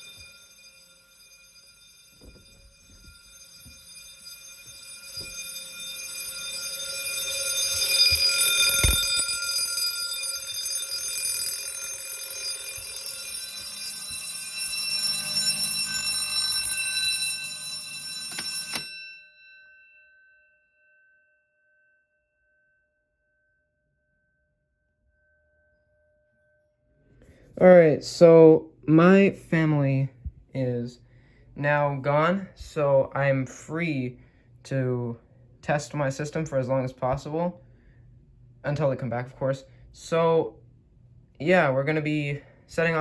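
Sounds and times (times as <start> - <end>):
fire alarm bells ringing: 0.0 - 20.0, 41.5 - 43.0.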